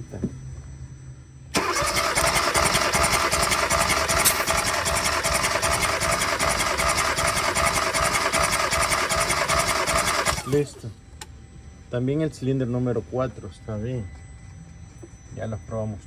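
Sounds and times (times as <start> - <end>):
starter motor cranking engine: 1.6 - 10.9.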